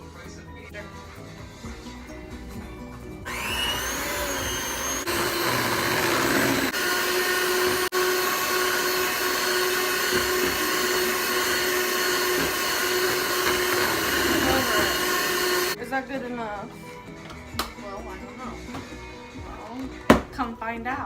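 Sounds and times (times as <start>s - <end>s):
electric mixer whirring: 3.3s - 15.8s.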